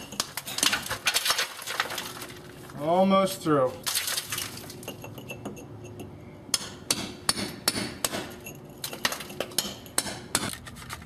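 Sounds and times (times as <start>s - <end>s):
hammer striking chisel on brick: 6.5s - 10.6s.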